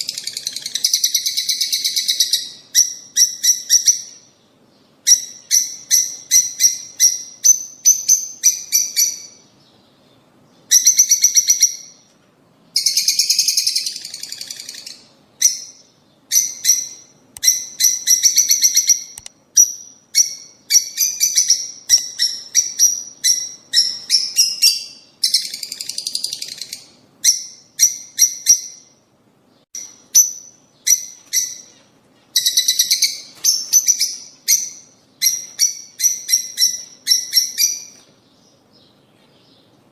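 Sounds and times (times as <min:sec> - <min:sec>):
harsh buzzy bird calls: 0:00.0 - 0:12.0, 0:12.8 - 0:29.0
lovebirds chirping: 0:00.0 - 0:12.1, 0:12.7 - 0:39.9.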